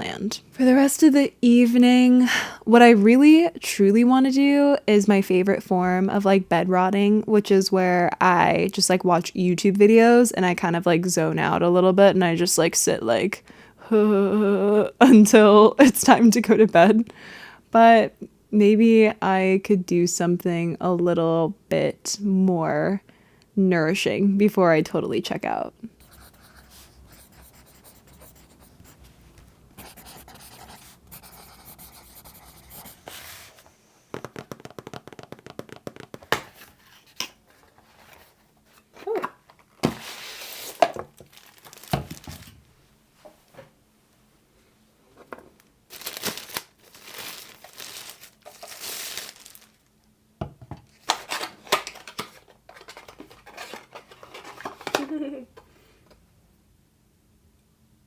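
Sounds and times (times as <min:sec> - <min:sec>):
plastic crinkling: 0:38.8 - 0:42.6, 0:45.6 - 0:49.9
packaging being torn: 0:40.5 - 0:42.5, 0:45.9 - 0:49.9.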